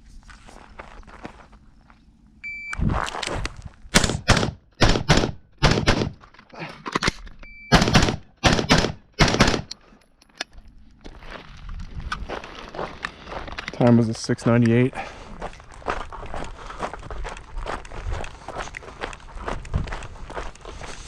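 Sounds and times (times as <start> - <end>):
shot timer beep: 2.4 - 2.8, 7.4 - 7.8
rifle shots in rapid pairs: 4.0 - 6.2, 7.7 - 9.7.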